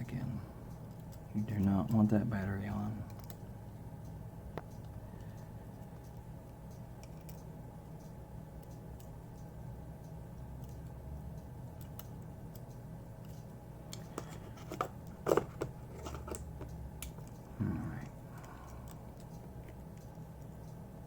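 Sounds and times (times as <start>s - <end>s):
steady low hum: 0.0s - 21.0s
small clicks and taps: 3.0s - 20.8s.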